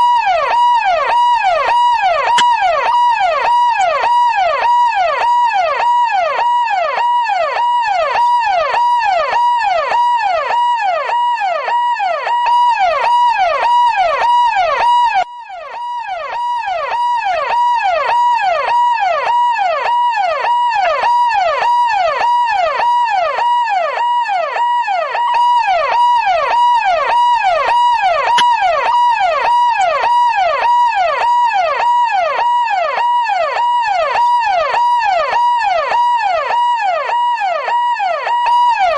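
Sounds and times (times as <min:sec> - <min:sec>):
police siren sweeping: 0:00.0 - 0:38.9
steady high tone: 0:26.7 - 0:30.0.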